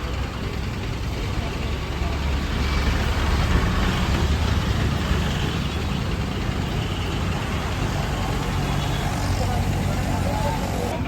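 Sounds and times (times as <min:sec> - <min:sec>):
vehicle engine rumbling: 0:00.0 - 0:11.0
street hiss: 0:06.2 - 0:11.0.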